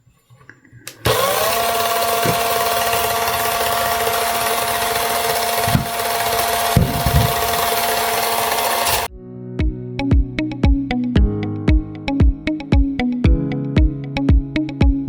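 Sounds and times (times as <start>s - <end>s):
electric sander grinding resin: 1.0s - 9.1s.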